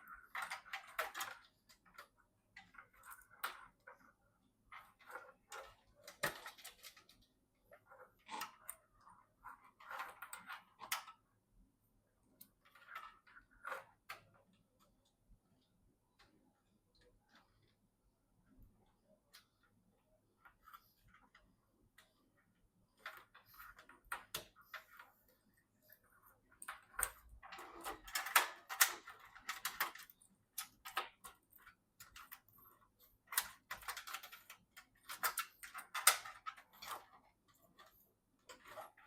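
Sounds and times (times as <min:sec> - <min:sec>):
computer parts clicking and tapping: 0:00.0 - 0:03.9, 0:04.7 - 0:07.3, 0:23.0 - 0:39.0.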